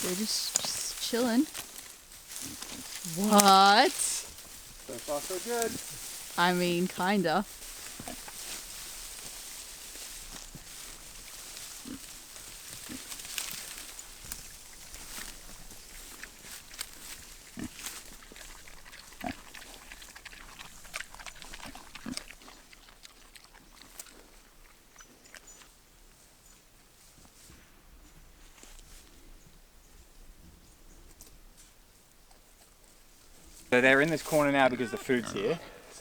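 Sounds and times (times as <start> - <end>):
rustling: 0.0 - 22.3
pigs grunting: 11.7 - 12.2, 17.4 - 24.3, 34.2 - 36.0.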